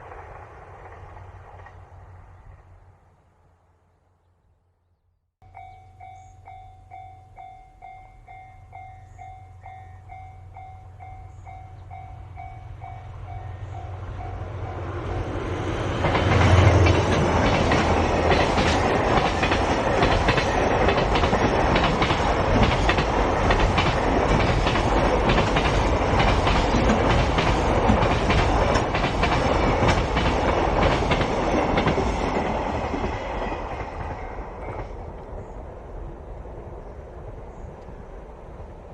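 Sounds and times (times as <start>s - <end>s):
level-crossing alarm bell: 5.4s - 14.6s
train wheels clattering over rail joints: 15.9s - 35.0s.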